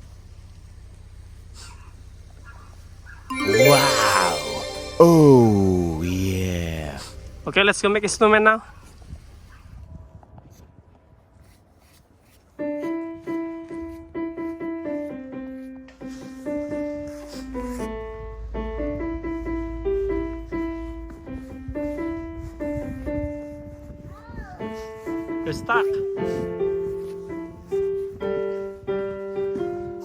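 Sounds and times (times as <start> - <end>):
piano music: 3.3 - 7.7.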